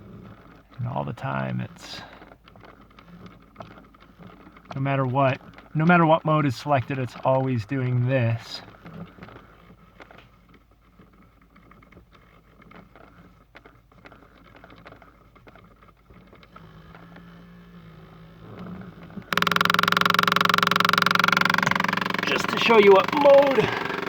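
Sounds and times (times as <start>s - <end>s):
loud steady pulsing: 19.3s - 24.0s.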